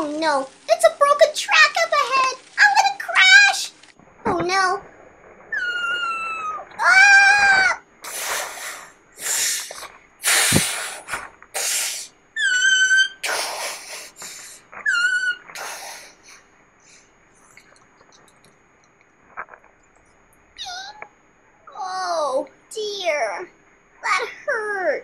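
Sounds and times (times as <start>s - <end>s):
child wailing and sobbing: 5.6s - 7.8s.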